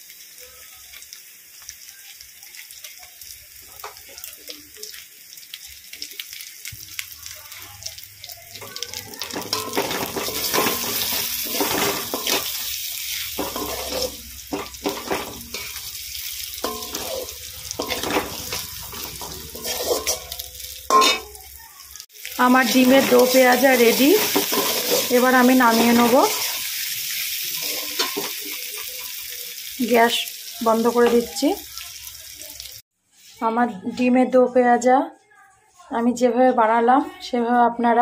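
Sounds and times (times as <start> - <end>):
food sizzling in a pan: 0.0 - 34.9
spatula scraping a pan: 8.7 - 15.9, 16.6 - 21.4, 24.2 - 26.7, 27.4 - 28.8.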